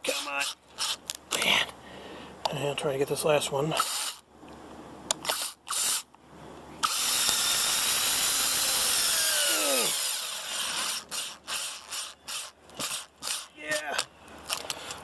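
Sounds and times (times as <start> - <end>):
cordless drill driving screw: 0.1 - 1.5, 3.8 - 4.2, 5.2 - 6.1, 6.8 - 15.0.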